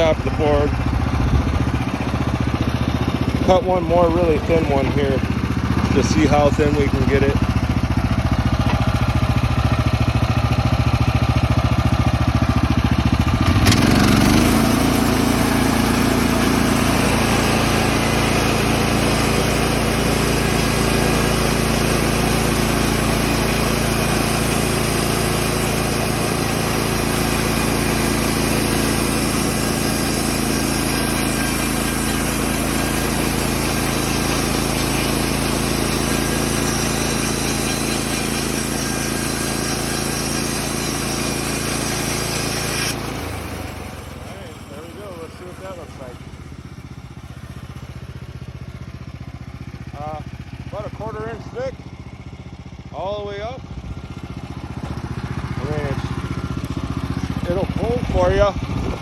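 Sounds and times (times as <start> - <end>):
band blade cutting wood: 0.0 - 0.7, 1.3 - 7.7, 12.6 - 46.2
sawmill engine running: 0.0 - 59.0.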